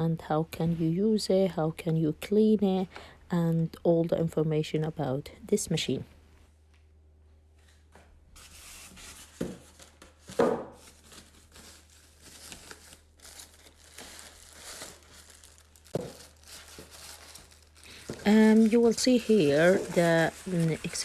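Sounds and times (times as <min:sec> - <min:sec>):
packaging crinkling and rustling: 0:08.4 - 0:21.0.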